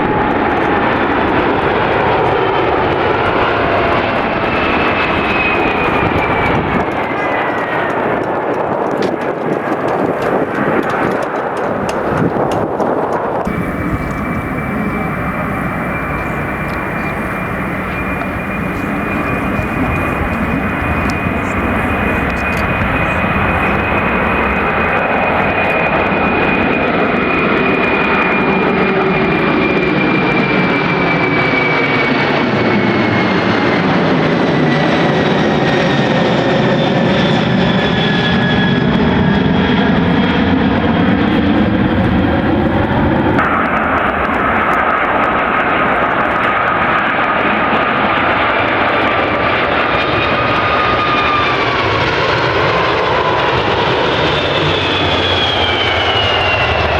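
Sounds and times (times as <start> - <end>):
high engine whine: 0.0 - 33.3, 37.2 - 56.9
jet engines passing: 0.0 - 56.9.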